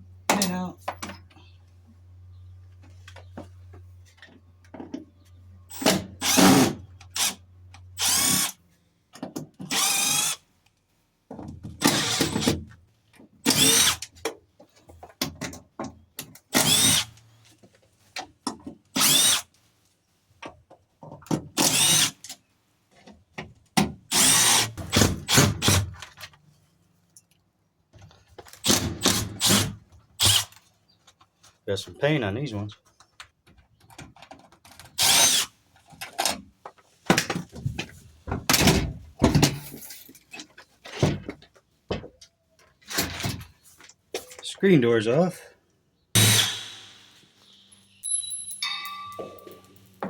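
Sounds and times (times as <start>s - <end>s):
cordless drill whining: 8.0s - 8.6s, 9.7s - 10.4s, 11.8s - 12.4s, 13.5s - 14.0s, 16.6s - 17.2s.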